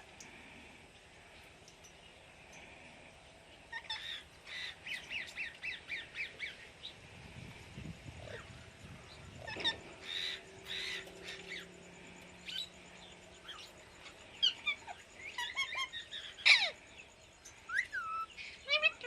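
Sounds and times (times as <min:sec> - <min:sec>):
parrots chirping and whistling: 0:09.4 - 0:11.6, 0:14.4 - 0:16.8, 0:17.7 - 0:19.0.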